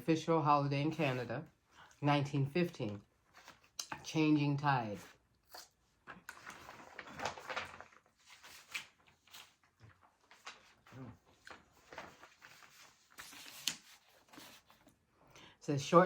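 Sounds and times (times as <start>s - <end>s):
wet chewing: 5.4s - 6.4s.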